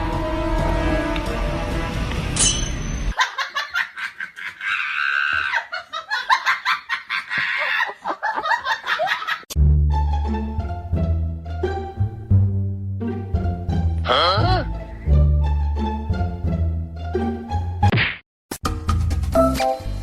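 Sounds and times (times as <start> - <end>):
background music: 0.0 - 3.1, 9.6 - 17.9, 18.6 - 20.0
high-pitched laughter: 3.2 - 9.4.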